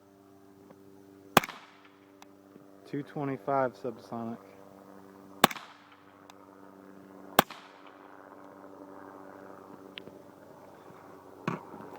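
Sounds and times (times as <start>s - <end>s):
steady low hum: 0.0s - 11.9s
suppressed rifle shot: 1.4s - 2.0s, 5.4s - 6.1s, 7.4s - 8.0s.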